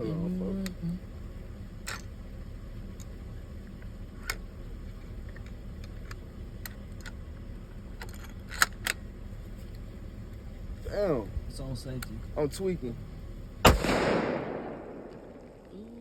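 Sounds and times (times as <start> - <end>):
gun handling clicks: 1.8 - 2.1, 5.2 - 7.4, 8.0 - 9.1, 13.7 - 15.7
low rumble: 9.4 - 16.0.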